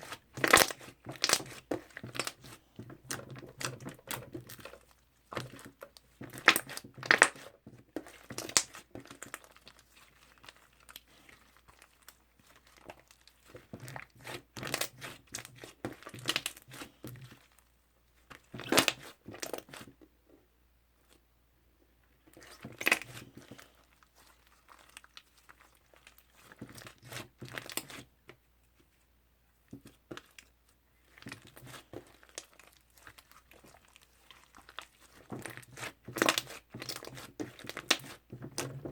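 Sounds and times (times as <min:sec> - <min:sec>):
slime crackling and popping: 0:00.1 - 0:07.5, 0:08.1 - 0:17.0, 0:31.2 - 0:38.9.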